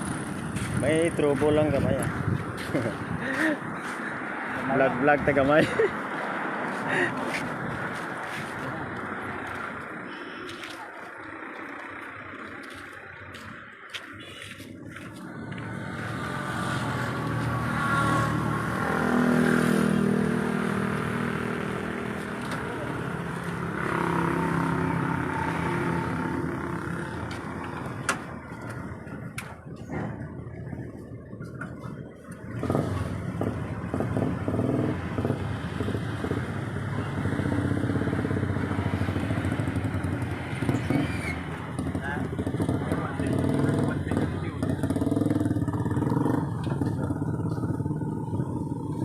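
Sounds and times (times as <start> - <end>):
vehicle engine passing by: 0.0 - 29.3, 32.4 - 49.0
motorcycle engine running: 31.4 - 49.0.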